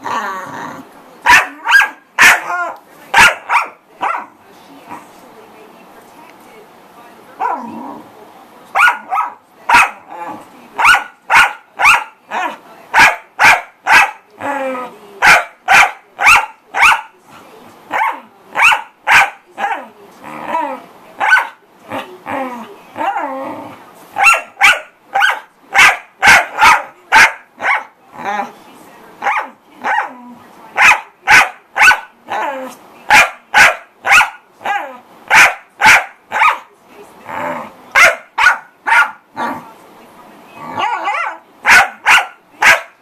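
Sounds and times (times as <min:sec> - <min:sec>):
dog growling and whining: 0:00.0 - 0:00.9, 0:07.4 - 0:08.1, 0:14.4 - 0:15.0, 0:20.2 - 0:20.9, 0:21.9 - 0:23.8, 0:28.1 - 0:28.5, 0:32.3 - 0:32.8, 0:37.2 - 0:37.8, 0:39.3 - 0:39.7, 0:40.6 - 0:41.4
dog barking: 0:01.2 - 0:04.3, 0:08.7 - 0:10.1, 0:10.8 - 0:14.2, 0:15.2 - 0:17.1, 0:17.9 - 0:19.9, 0:21.2 - 0:21.6, 0:24.2 - 0:27.9, 0:29.2 - 0:30.1, 0:30.8 - 0:32.1, 0:33.1 - 0:36.7, 0:38.0 - 0:39.2, 0:40.8 - 0:43.0.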